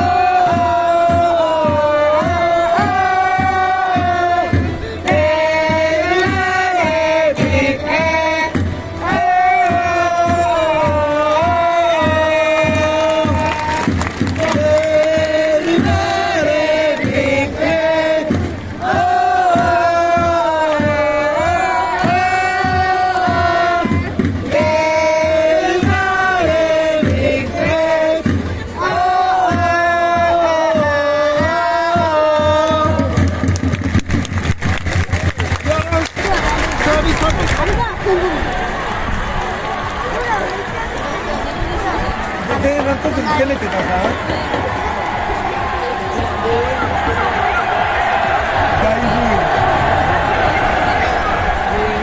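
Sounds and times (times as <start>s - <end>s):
crowd chanting in unison: 0.0s - 33.5s, 36.1s - 52.0s
steady drum beat: 0.0s - 52.0s.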